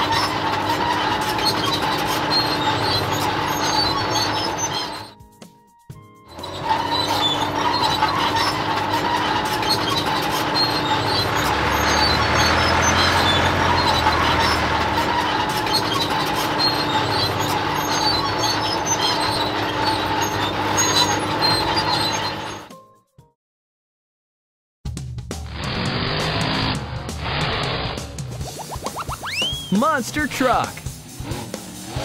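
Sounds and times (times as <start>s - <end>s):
continuous clatter: 0.0s - 5.1s, 6.3s - 22.7s
vehicle engine running: 6.3s - 22.7s.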